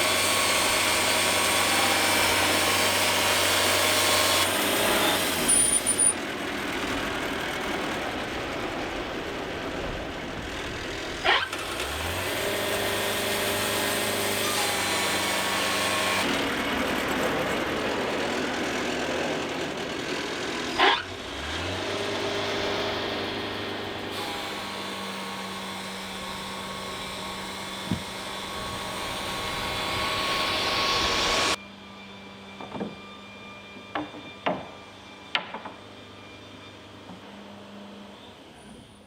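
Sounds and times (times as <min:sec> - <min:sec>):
band sawmill sawing log: 0:00.0 - 0:31.6.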